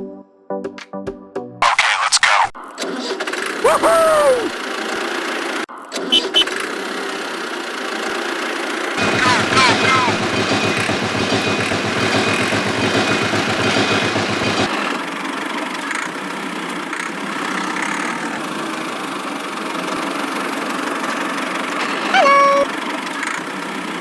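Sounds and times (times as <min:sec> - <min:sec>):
small machine motor pulsing: 0:04.5 - 0:14.7
loud pitched tone: 0:09.0 - 0:10.3, 0:22.2 - 0:22.7.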